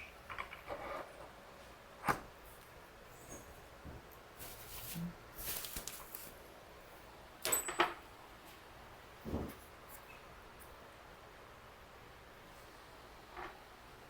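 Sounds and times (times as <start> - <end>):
rustling or scraping: 3.2 - 6.4.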